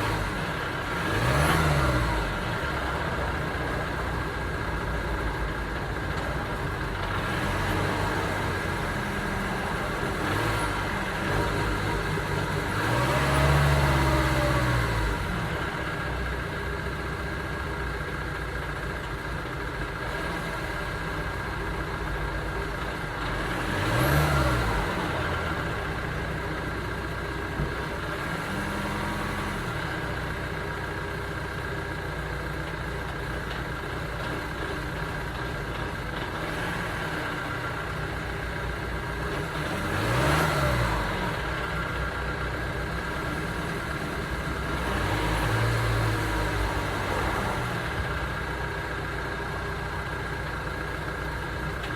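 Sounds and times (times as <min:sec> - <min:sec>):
diesel engine idling and revving: 0:00.0 - 0:51.9.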